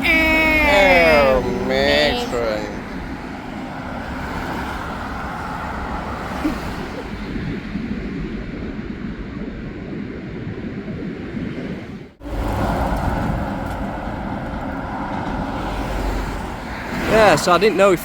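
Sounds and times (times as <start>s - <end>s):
road traffic rumble: 0.0s - 8.5s, 12.2s - 18.0s.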